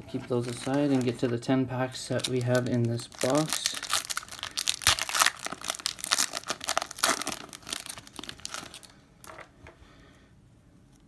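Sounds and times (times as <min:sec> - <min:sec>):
wrapper crinkling and tearing: 0:00.4 - 0:01.2, 0:02.1 - 0:09.5.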